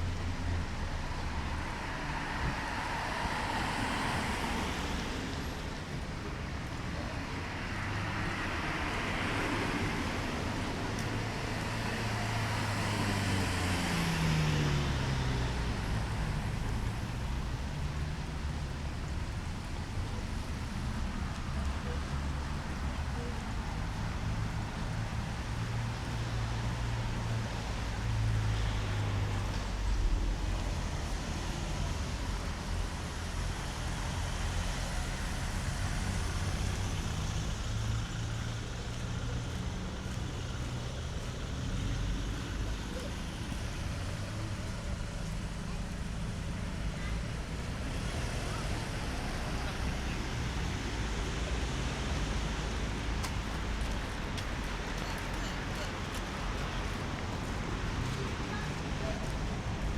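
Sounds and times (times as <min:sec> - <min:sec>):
vehicles passing: 0:00.0 - 0:59.9.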